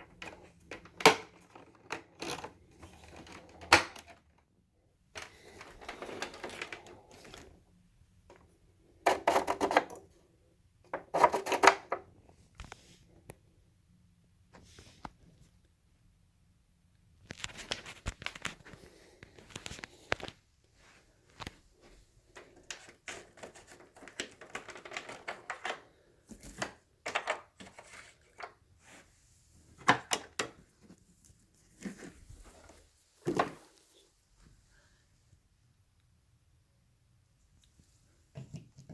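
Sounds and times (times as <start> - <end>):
objects clicking and knocking: 9.0 - 10.1, 10.9 - 12.1.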